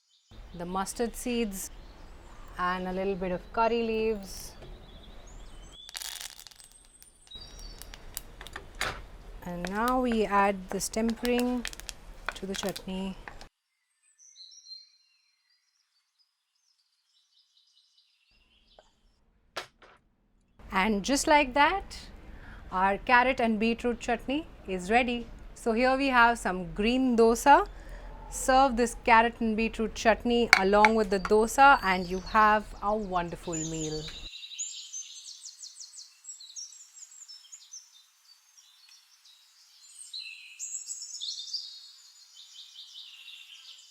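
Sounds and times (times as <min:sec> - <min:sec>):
birds chirping and trilling: 0:00.0 - 0:06.0, 0:06.8 - 0:19.2, 0:26.1 - 0:43.9.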